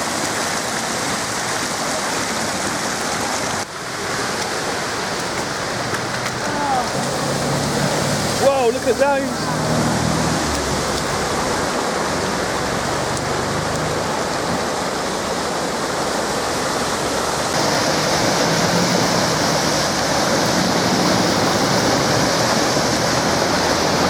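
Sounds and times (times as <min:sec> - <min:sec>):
floodwater running: 0:00.0 - 0:24.0
heavy rain pouring: 0:00.0 - 0:24.0.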